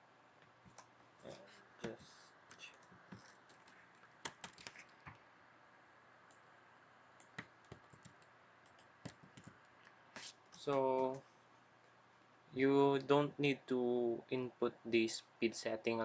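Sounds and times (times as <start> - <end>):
keyboard typing: 1.8 - 5.2, 7.2 - 11.2.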